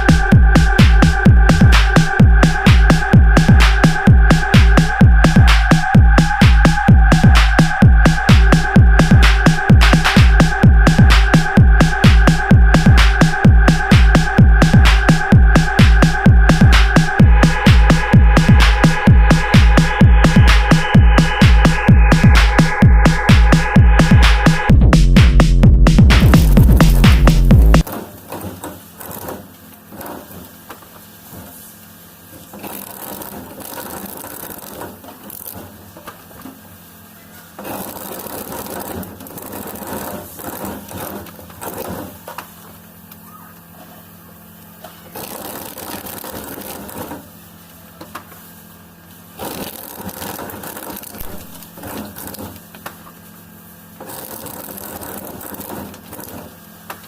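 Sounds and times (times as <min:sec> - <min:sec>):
harsh machine working noise: 0:00.0 - 0:57.0
small machine motor humming: 0:26.2 - 0:57.0.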